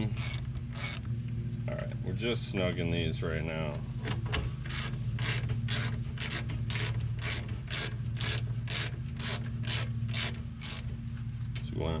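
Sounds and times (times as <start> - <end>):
ratchet pawl rasping: 0.0 - 1.1, 4.7 - 10.9
steady low hum: 0.0 - 12.0.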